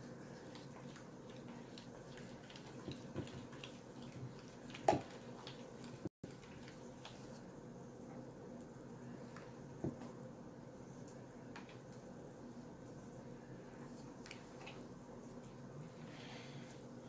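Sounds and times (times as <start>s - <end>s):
faint clicks and handling noises: 11.0s - 12.1s.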